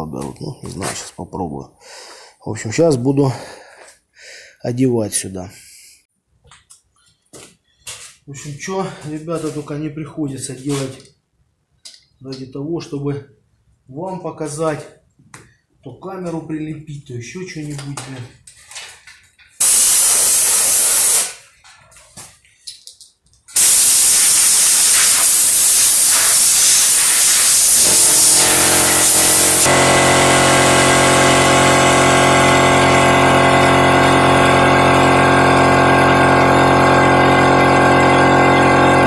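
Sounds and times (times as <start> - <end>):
loud hissing spray: 19.6 - 21.4, 23.6 - 31.6.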